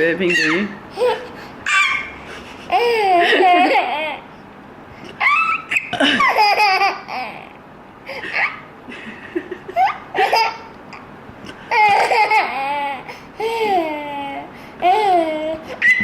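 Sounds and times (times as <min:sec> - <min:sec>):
young child laughing and squealing: 0:00.3 - 0:04.3, 0:05.0 - 0:07.6, 0:08.2 - 0:08.7, 0:11.7 - 0:16.0.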